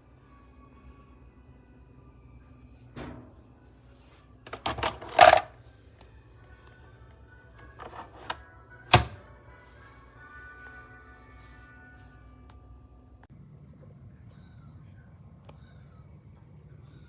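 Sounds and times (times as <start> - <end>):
faint background music: 0.0 - 17.0
hard objects clinking and knocking: 4.5 - 5.5.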